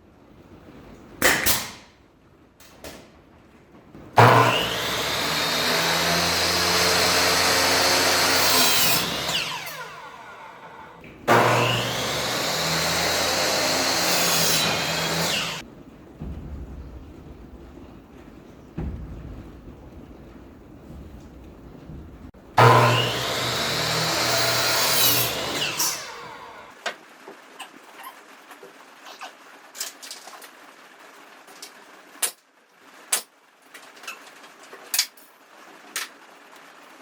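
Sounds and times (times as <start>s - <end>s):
electric saw cutting wood: 4.2s - 15.6s, 22.6s - 26.7s
saw blade winding down: 4.2s - 15.6s, 22.6s - 26.7s.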